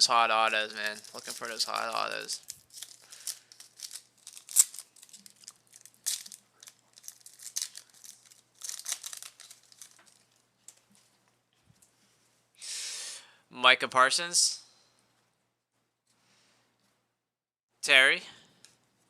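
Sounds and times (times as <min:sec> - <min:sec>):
foil wrapper crinkling and tearing: 0:00.1 - 0:10.8.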